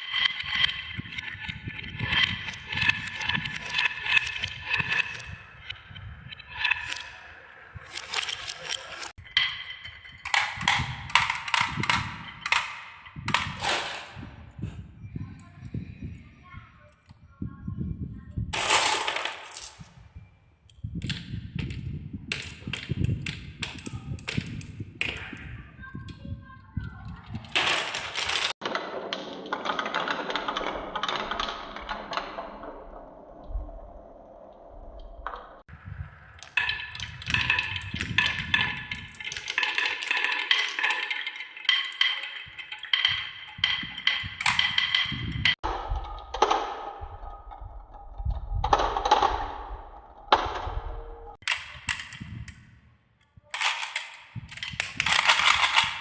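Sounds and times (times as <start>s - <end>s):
marbles clicking on track: 0.0s - 14.3s, 18.5s - 20.0s, 20.7s - 32.9s, 35.9s - 45.7s, 51.3s - 52.7s, 53.5s - 56.0s
marbles rolling down track: 0.0s - 14.3s, 18.5s - 19.8s, 27.2s - 32.9s, 35.9s - 45.7s, 53.5s - 56.0s.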